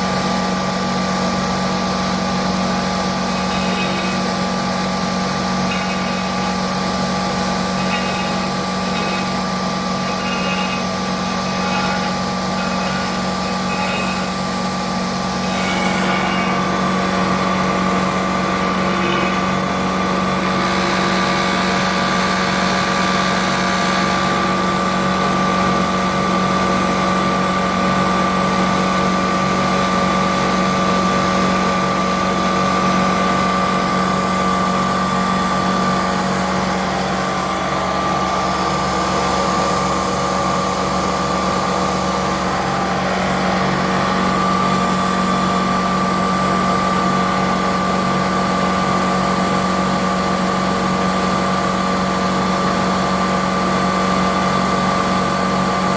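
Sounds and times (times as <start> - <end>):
milling machine motor hum: 0.0 - 55.9
higher steady tone: 2.2 - 25.8.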